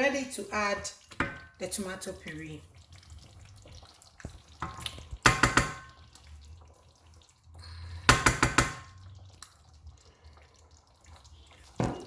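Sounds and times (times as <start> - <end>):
metal utensil tapping cooking pot: 1.1 - 1.6, 4.6 - 6.0, 8.0 - 9.0.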